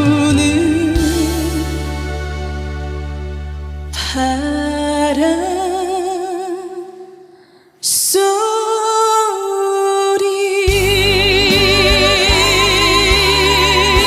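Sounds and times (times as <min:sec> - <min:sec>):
bass and accompaniment: 0:00.0 - 0:06.0, 0:10.7 - 0:14.0
wavering melody line: 0:10.8 - 0:14.0.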